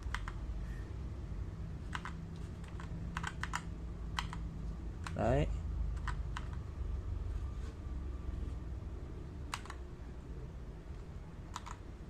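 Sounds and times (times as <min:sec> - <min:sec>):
low steady hum: 0:00.0 - 0:12.0
mechanical keyboard key clacks: 0:11.5 - 0:11.8.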